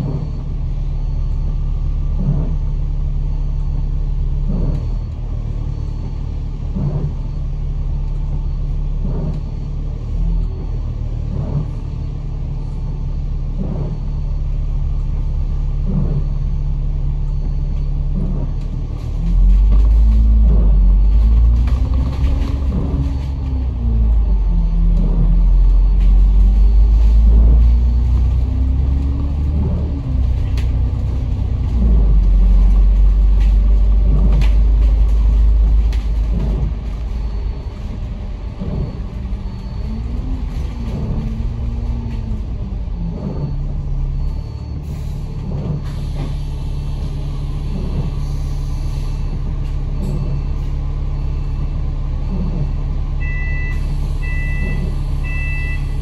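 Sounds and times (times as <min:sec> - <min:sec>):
bus engine accelerating: 0:00.0 - 0:56.0.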